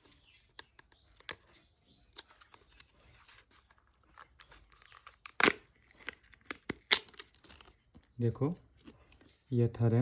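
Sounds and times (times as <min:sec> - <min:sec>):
sharp plastic crack: 0:00.0 - 0:02.9, 0:04.1 - 0:07.8
plastic packaging crinkling and tearing: 0:00.0 - 0:08.1.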